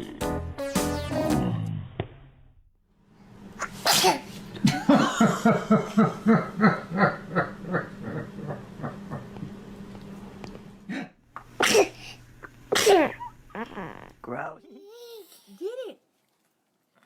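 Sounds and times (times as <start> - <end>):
baby sneezing: 3.6 - 4.3, 11.6 - 12.1, 12.7 - 14.1.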